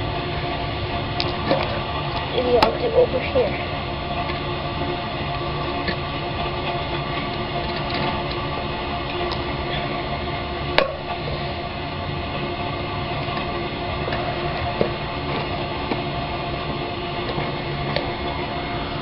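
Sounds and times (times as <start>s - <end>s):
steady background drone: 0.0s - 19.0s.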